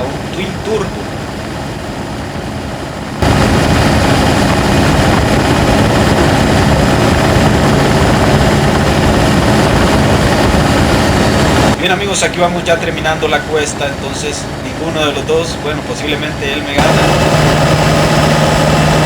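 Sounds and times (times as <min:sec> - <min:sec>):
pickup truck engine climbing: 0:16.8 - 0:19.0.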